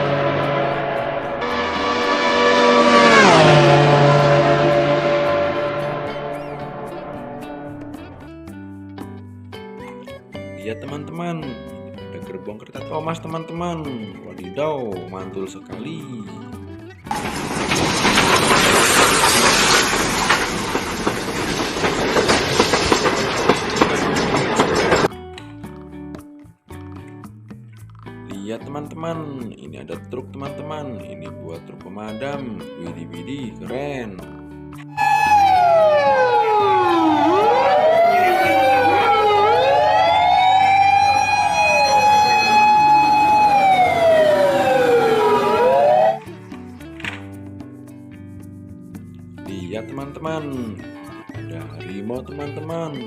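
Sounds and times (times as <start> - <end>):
fire engine sirens wailing: 0.0 - 7.8, 34.9 - 46.3
train rattling on rails: 17.1 - 25.1.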